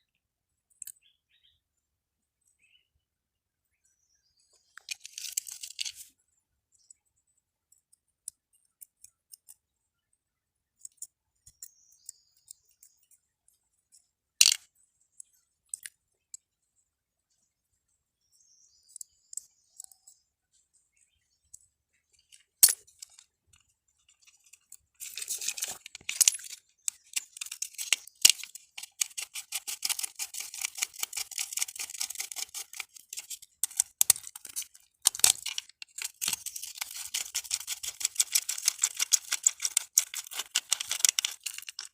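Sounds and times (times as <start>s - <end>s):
small parts clicking and tapping: 0.6s - 1.1s, 4.6s - 16.6s, 18.9s - 20.8s, 21.4s - 41.9s
rapid scraping clicks: 22.2s - 41.9s.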